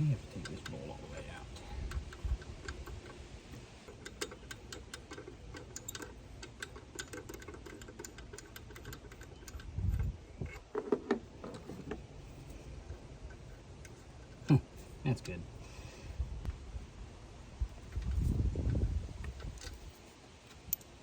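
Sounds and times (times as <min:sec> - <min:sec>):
ratchet wrench clicking: 0:03.9 - 0:09.7.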